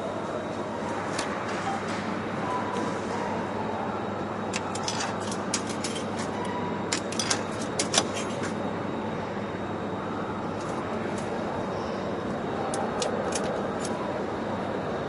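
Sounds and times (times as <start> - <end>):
steady background noise: 0.0 - 15.0
vending machine clicking and rattling: 4.3 - 8.6, 12.5 - 14.2.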